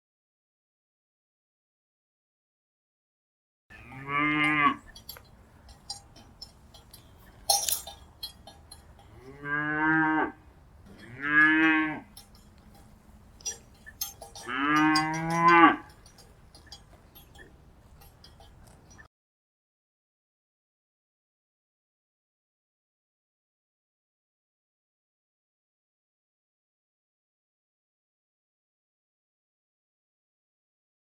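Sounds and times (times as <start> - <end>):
cattle mooing: 3.7 - 5.2, 8.7 - 12.8, 13.4 - 16.2.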